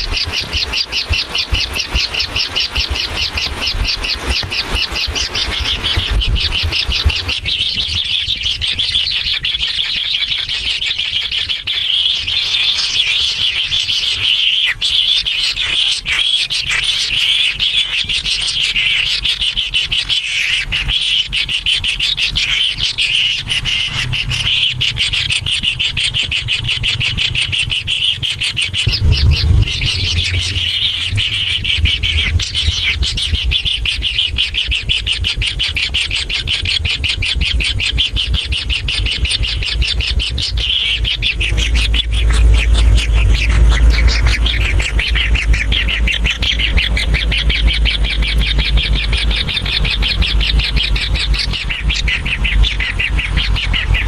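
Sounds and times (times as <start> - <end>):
birds chirping: 0.0 - 54.0
low rumble: 23.6 - 35.8, 36.4 - 54.0.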